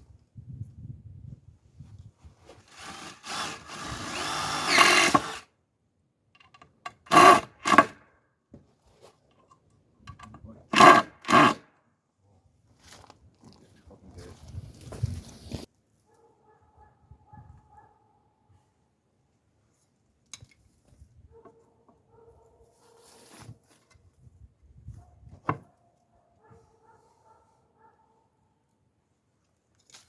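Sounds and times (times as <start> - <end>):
cordless drill driving screws: 2.7 - 5.5, 7.0 - 8.0, 10.7 - 11.6.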